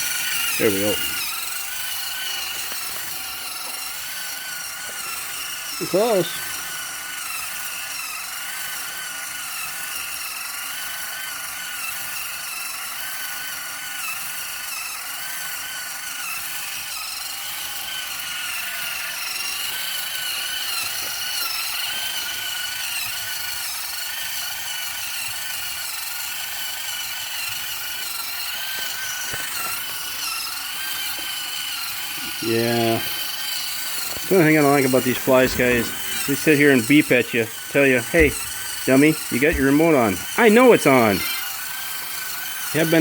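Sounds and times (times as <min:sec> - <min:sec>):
servo motor whining: 0:00.0 - 0:43.0
steady hiss: 0:27.4 - 0:43.0.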